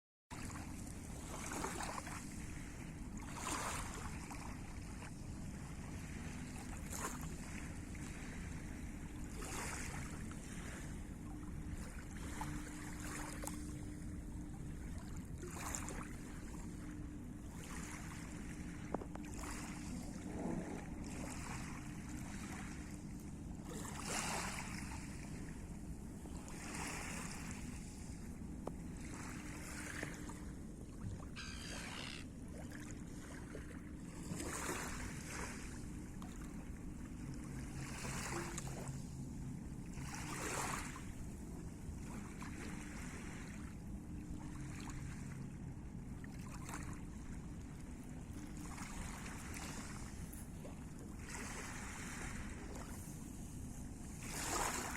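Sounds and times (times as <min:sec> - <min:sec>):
sea water splashing: 0:00.3 - 0:39.2, 0:39.8 - 0:45.6, 0:46.2 - 0:54.9
low hum: 0:02.2 - 0:34.3.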